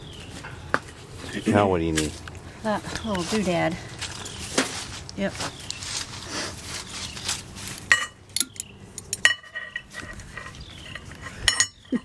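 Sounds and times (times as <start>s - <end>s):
metal tools clinking: 6.9s - 12.0s
sharp ringing clinks: 11.5s - 12.0s.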